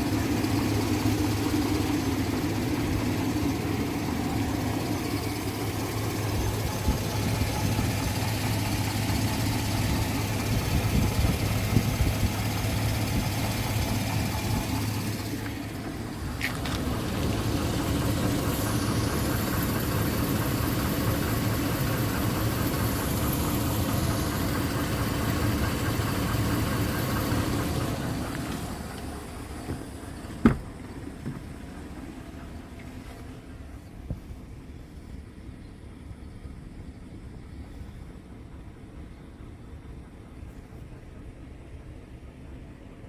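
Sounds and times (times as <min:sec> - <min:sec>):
vehicle engine running: 0:00.0 - 0:43.0.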